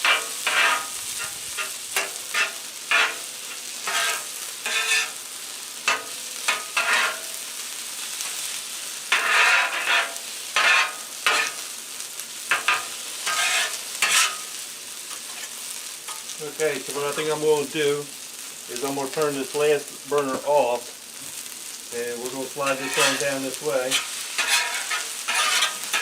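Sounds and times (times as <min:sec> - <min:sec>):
metal spatulas scraping griddle: 0:00.0 - 0:05.2, 0:05.9 - 0:07.4, 0:09.1 - 0:11.7, 0:12.5 - 0:16.3, 0:22.3 - 0:26.0
chicken sizzling on griddle: 0:00.0 - 0:26.0.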